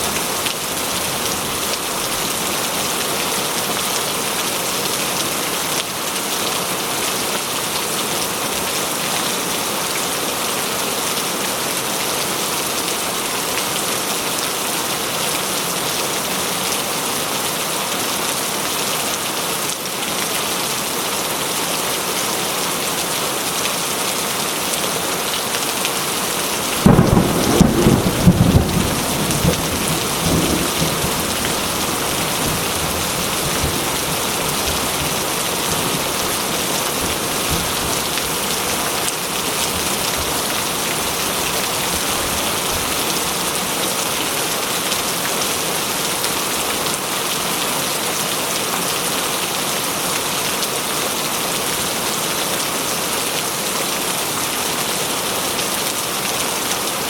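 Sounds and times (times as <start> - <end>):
heavy rain hissing: 22.4 - 48.5
thunder clap rumbling: 26.8 - 33.8.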